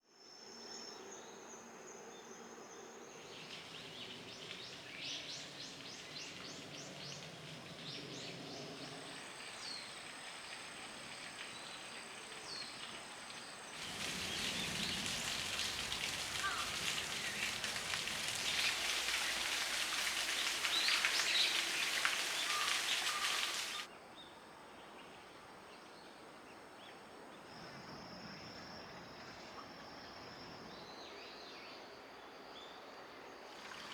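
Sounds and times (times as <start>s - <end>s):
birds chirping: 3.2s - 23.9s
insects trilling: 3.2s - 23.9s
rushing falling water: 3.3s - 23.9s, 33.6s - 33.9s.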